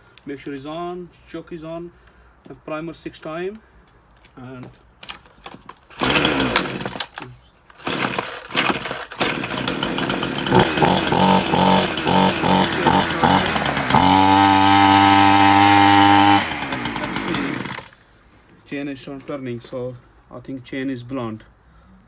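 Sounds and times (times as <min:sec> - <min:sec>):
chainsaw engine revving: 0:05.9 - 0:07.1, 0:07.8 - 0:18.0
chainsaw pull-start: 0:05.9 - 0:18.0.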